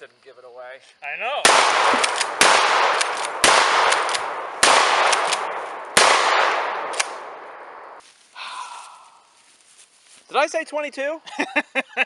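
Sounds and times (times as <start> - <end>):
gunshots echoing: 1.4 - 8.0
faint sharp cracks: 1.5 - 8.0.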